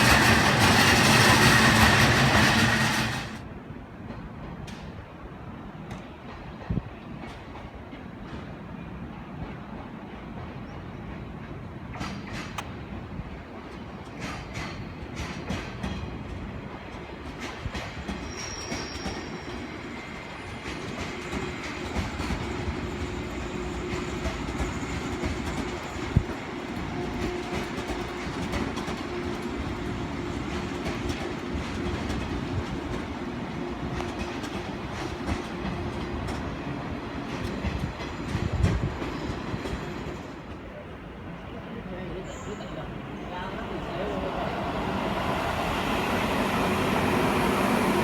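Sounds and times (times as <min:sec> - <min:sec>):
train wheels clicking over rail joints: 0:00.0 - 0:05.1, 0:05.8 - 0:40.6
train rumble: 0:00.0 - 0:48.0.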